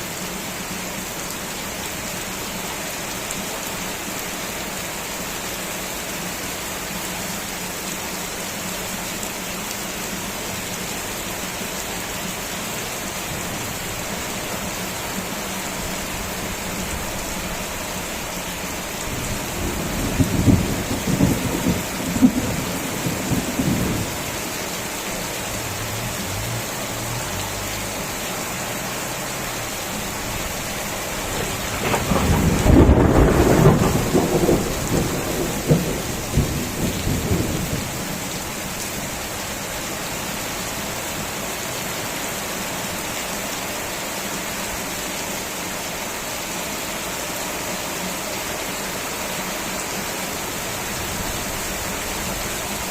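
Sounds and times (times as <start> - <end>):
steady rain falling: 0.0 - 52.9
thunder rumbling: 19.1 - 24.5, 31.1 - 38.4.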